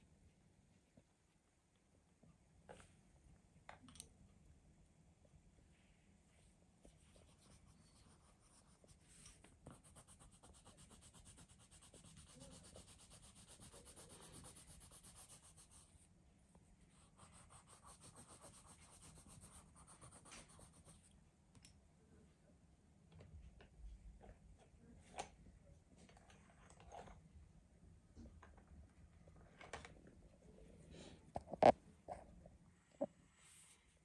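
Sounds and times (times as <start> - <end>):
faint rubbing rasp: 7.3 - 15.9.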